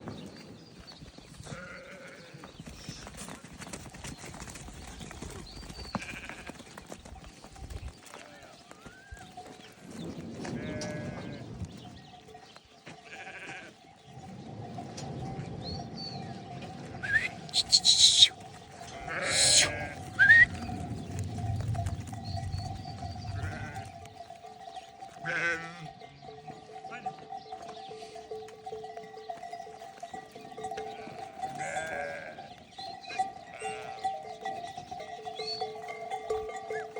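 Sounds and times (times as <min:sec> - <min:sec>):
animals moving clicks and knocks: 0:00.1 - 0:13.7
sheep bleating: 0:01.5 - 0:02.5, 0:06.0 - 0:06.6, 0:10.5 - 0:11.5, 0:13.0 - 0:13.8, 0:17.0 - 0:20.8, 0:23.3 - 0:24.1, 0:25.1 - 0:26.0, 0:30.7 - 0:34.4.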